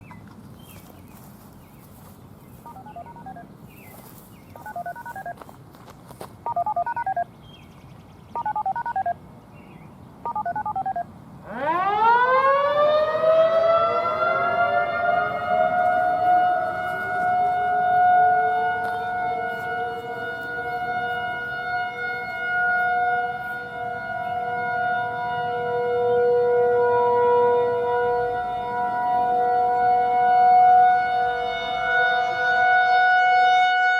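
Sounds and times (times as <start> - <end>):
rotating siren: 2.6 - 5.4, 6.5 - 7.3, 8.4 - 9.2, 10.3 - 33.9
short beeping tones: 2.7 - 3.5, 4.6 - 5.4, 6.5 - 7.3, 8.4 - 9.2, 10.3 - 11.1.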